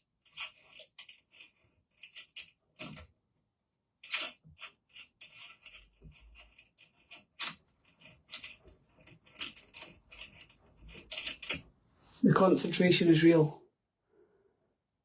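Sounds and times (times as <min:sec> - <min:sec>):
small plastic parts clicking: 0:04.0 - 0:11.6.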